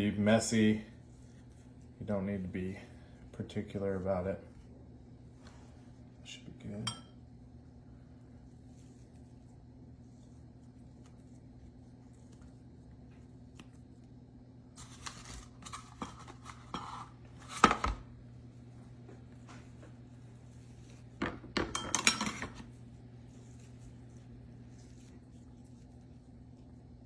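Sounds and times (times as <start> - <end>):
faint steady hum: 0.0 - 27.0
dishes and utensils clinking: 6.8 - 7.2, 21.2 - 22.7.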